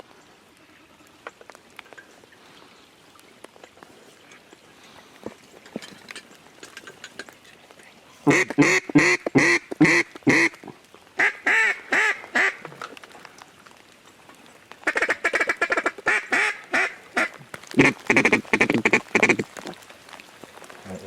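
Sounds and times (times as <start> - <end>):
duck call quacks: 8.3 - 10.6, 11.2 - 12.6, 14.9 - 19.5.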